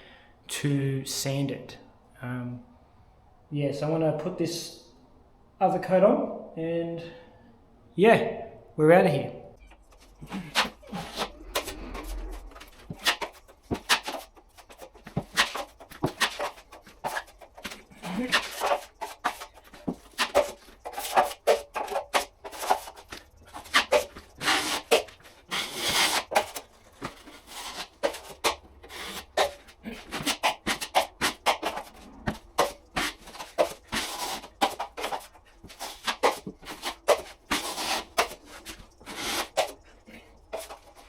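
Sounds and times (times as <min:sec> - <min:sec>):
plastering blade scraping plaster: 0:10.2 - 0:41.0.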